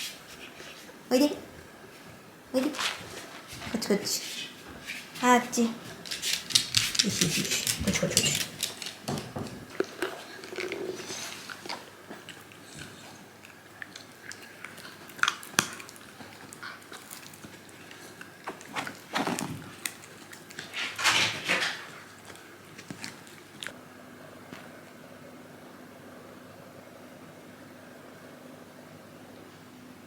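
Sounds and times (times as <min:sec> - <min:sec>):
dog paws clicking and scuffling: 0:01.9 - 0:13.2, 0:13.8 - 0:23.8.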